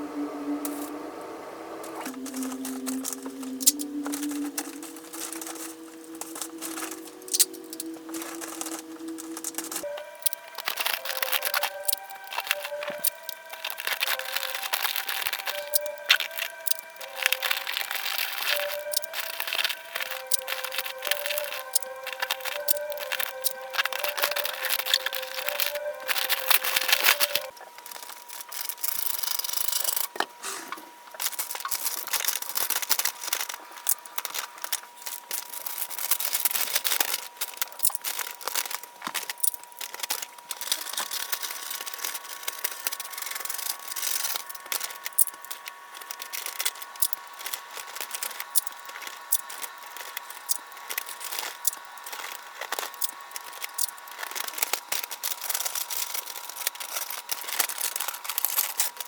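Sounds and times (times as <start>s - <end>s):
faint high tone: 0.0s - 27.5s
packaging tearing: 2.0s - 30.1s, 31.2s - 59.0s
packaging crinkling and rustling: 2.0s - 30.2s, 31.1s - 59.0s.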